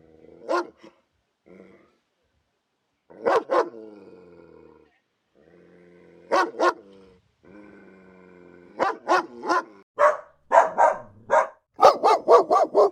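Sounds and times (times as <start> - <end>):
dog barking: 0.5 - 0.9, 3.2 - 3.8, 6.3 - 6.8, 8.8 - 12.9.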